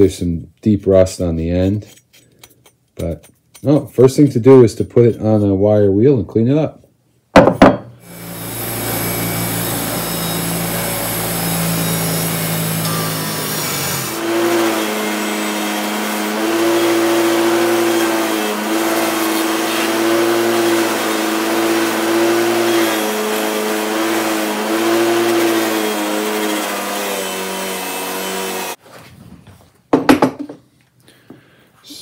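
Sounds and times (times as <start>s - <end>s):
loud knock: 7.4s - 7.9s
wire wheel motor hum: 8.0s - 28.8s.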